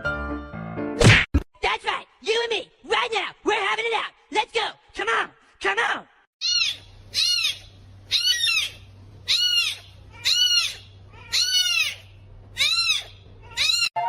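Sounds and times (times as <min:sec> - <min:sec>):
animal high-pitched calls: 0:06.4 - 0:14.0.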